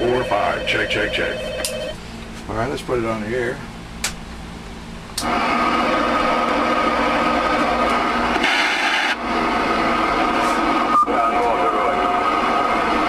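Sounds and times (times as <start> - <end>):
radio static: 8.3 - 9.2, 10.6 - 13.0.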